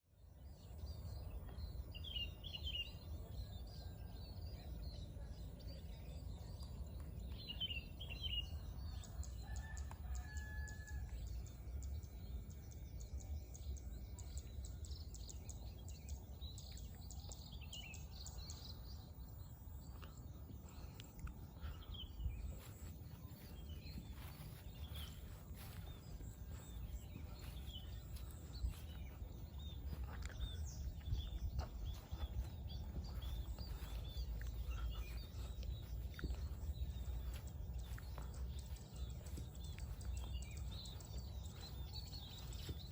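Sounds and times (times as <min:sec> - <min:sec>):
small birds chirping: 0:00.0 - 0:42.9
rooster crowing: 0:09.3 - 0:11.4
steady low rumble: 0:11.1 - 0:42.9.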